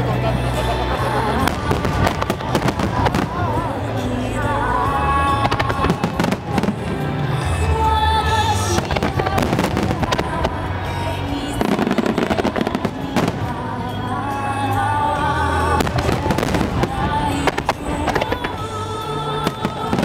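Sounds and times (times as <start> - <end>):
music with steady melody: 0.0 - 20.0
fireworks bursting and crackling: 1.2 - 4.1, 5.3 - 7.7, 8.4 - 14.2, 15.4 - 20.0.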